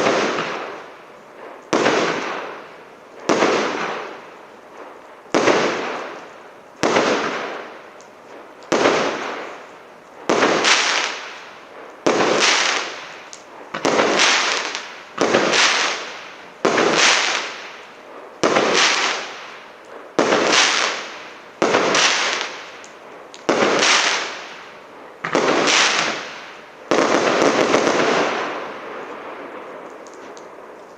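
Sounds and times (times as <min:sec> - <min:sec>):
firework battery firing shots: 0:00.0 - 0:30.7.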